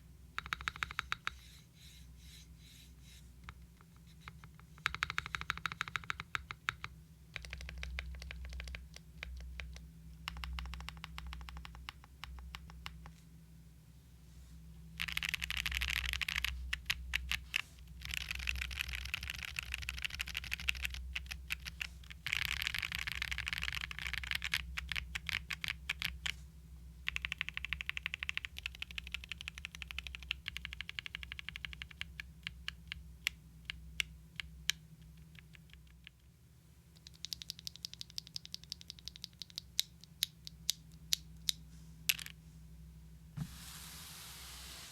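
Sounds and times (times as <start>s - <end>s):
mechanical keyboard typing: 0.4s - 1.4s, 4.8s - 12.8s, 15.0s - 17.4s, 18.0s - 26.3s, 27.1s - 32.2s.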